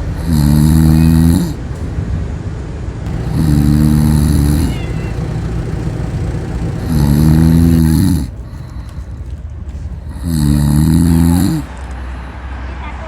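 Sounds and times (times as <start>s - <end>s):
cat snoring: 0.0s - 1.6s, 3.1s - 5.7s, 6.3s - 8.4s, 10.1s - 11.7s.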